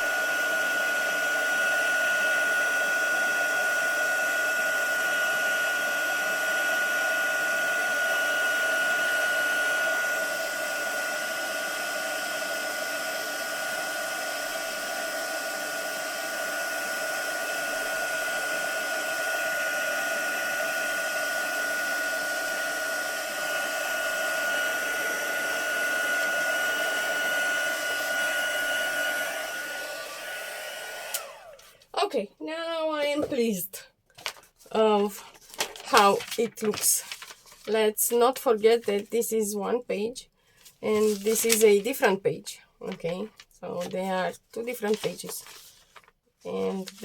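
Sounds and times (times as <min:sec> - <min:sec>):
heat tool blowing with high whine: 0:00.0 - 0:31.6.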